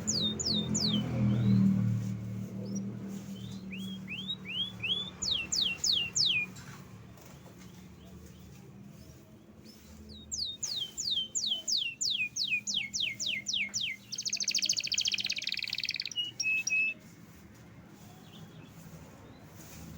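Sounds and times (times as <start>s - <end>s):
canary trill: 0.0s - 7.7s, 10.1s - 17.0s
canary singing: 0.0s - 17.0s.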